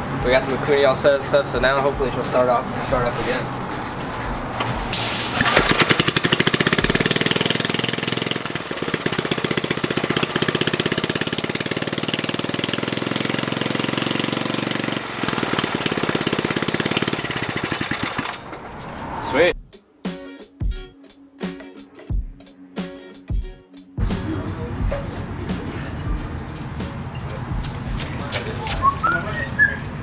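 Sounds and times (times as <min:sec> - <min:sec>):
small engine running: 0:05.2 - 0:18.5.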